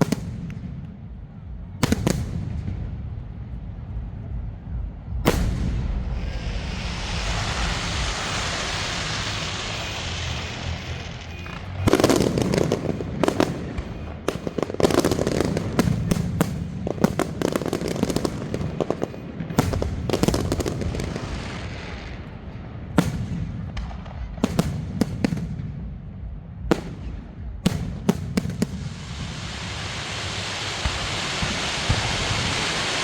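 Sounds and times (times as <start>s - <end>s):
fireworks cracking reports: 0.0s - 33.0s
fireworks crackling hiss: 5.3s - 25.2s, 27.7s - 33.0s.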